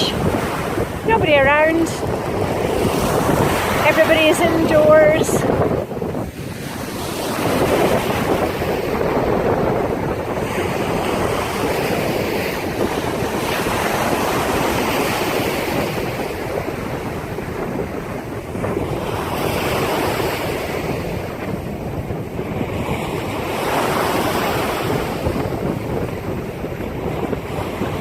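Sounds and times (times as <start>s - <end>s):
sea waves breaking: 0.0s - 28.0s
wind buffeting microphone: 0.0s - 28.0s.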